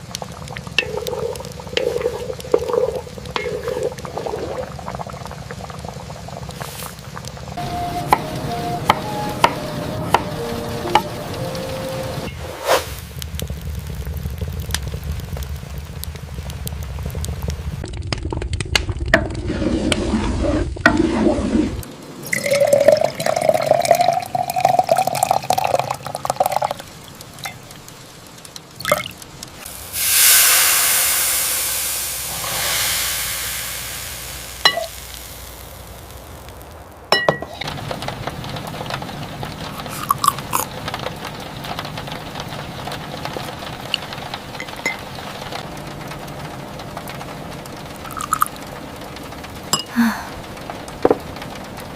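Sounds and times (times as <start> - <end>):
liquid stirred and poured: 0.0 - 7.0, 19.1 - 26.8, 32.3 - 35.4, 39.7 - 40.7, 48.1 - 48.6
small clicks and knocks: 26.8 - 29.6
loud hiss: 29.6 - 36.8
pots and utensils clinking: 37.1 - 37.6.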